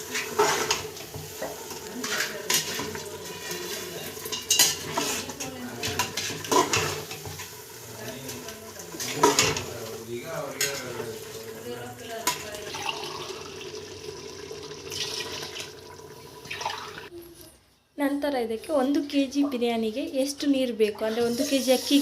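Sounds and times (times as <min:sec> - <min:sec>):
spoon scraping a cooking pot: 0:00.0 - 0:09.8
light sizzling: 0:00.0 - 0:17.4, 0:20.9 - 0:22.0.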